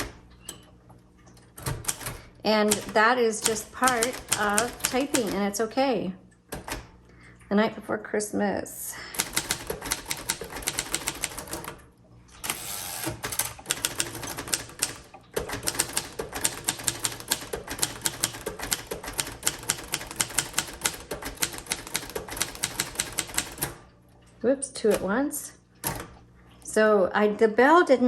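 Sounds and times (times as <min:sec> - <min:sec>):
manual typewriter keystrokes: 0:00.0 - 0:00.6, 0:01.6 - 0:05.6, 0:06.5 - 0:06.9, 0:09.2 - 0:11.8, 0:12.4 - 0:23.9, 0:24.8 - 0:25.2, 0:25.8 - 0:26.2.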